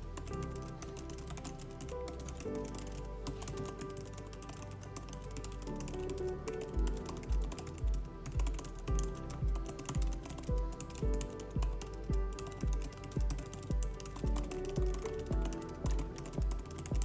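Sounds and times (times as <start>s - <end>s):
fast keyboard typing: 0.4s - 17.0s
background music with bass beat: 5.6s - 17.0s.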